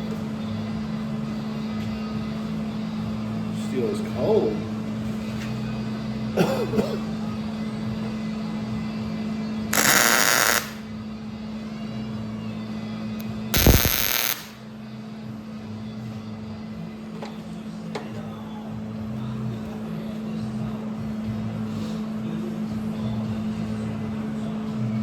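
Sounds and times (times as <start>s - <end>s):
welding hissing crackle: 9.8s - 10.8s, 13.6s - 14.6s
steady hum: 9.8s - 10.9s, 13.5s - 14.6s.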